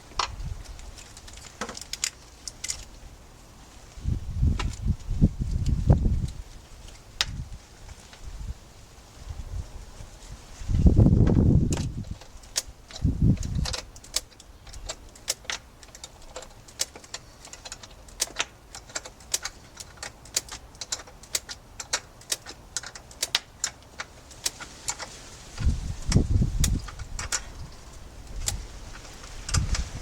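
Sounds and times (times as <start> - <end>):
hand tools clicking and tapping: 11.7 - 30.0.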